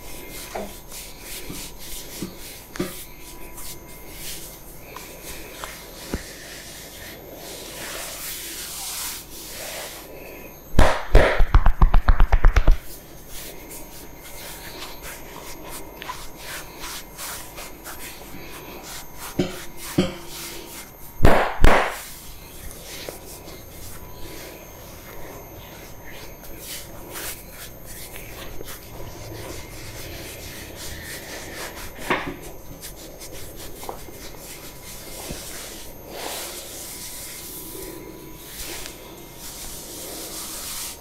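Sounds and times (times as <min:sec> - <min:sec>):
hands rubbing hair: 0:00.0 - 0:10.1, 0:11.4 - 0:21.1, 0:21.7 - 0:37.8, 0:38.4 - 0:41.0
hands slapping head: 0:10.8 - 0:12.8.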